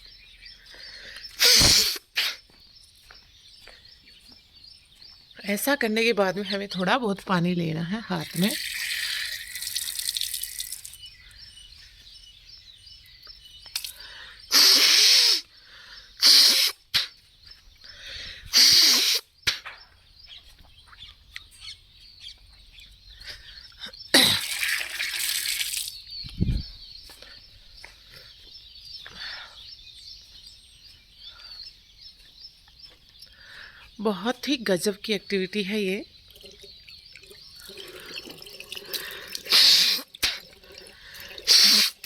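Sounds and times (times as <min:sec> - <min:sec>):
birds chirping faintly: 0:00.0 - 0:42.0
woman sneezing: 0:01.4 - 0:02.4.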